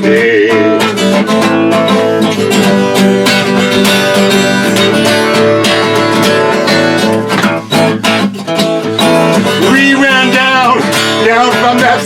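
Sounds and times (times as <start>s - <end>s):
person singing country-folk song: 0.0s - 3.0s, 9.4s - 12.0s
acoustic guitar strumming: 0.0s - 12.0s.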